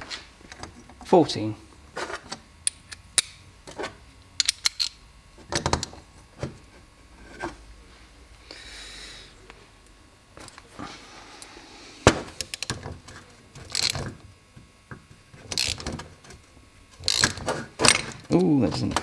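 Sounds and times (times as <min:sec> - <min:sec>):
metal parts clicking and tapping: 0:02.3 - 0:06.0, 0:12.3 - 0:12.9, 0:13.6 - 0:14.2, 0:14.9 - 0:19.0.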